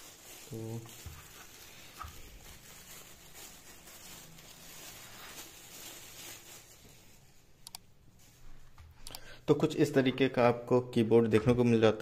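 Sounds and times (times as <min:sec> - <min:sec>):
plastic wrap rustling: 0:00.0 - 0:09.0.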